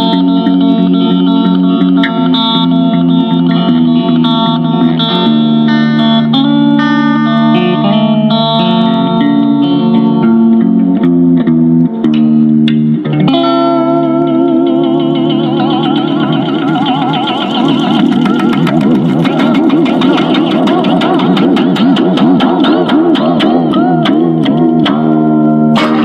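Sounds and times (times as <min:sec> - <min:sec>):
plucked guitar notes: 0:00.0 - 0:26.0
sustained low tones: 0:12.9 - 0:26.0.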